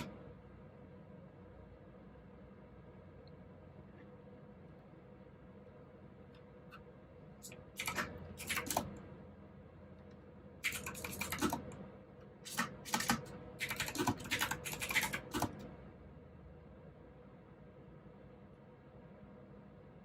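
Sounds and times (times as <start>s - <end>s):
typing on mechanical keyboard: 7.5s - 9.0s, 10.6s - 11.8s, 12.5s - 15.7s.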